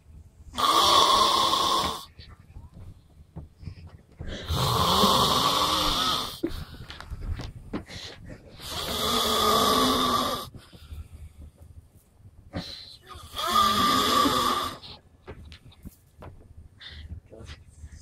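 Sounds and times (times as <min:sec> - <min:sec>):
man snoring: 0:00.6 - 0:02.1, 0:04.4 - 0:06.4, 0:08.6 - 0:10.5, 0:13.2 - 0:14.9.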